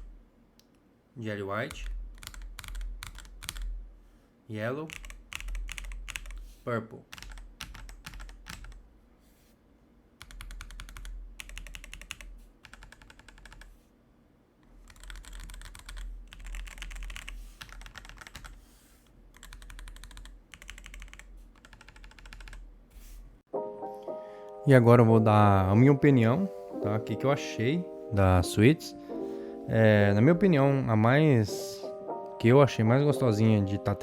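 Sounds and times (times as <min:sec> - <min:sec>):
mechanical keyboard typing: 0:01.7 - 0:03.8, 0:04.8 - 0:06.4, 0:07.1 - 0:08.8, 0:10.2 - 0:13.8, 0:14.6 - 0:18.6, 0:19.3 - 0:22.7.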